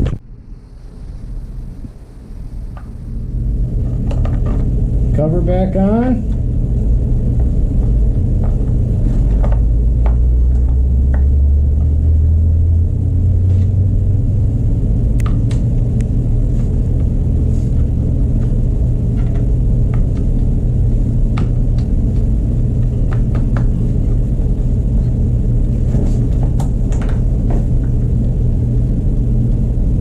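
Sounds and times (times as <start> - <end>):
low background rumble: 0.0 - 30.0.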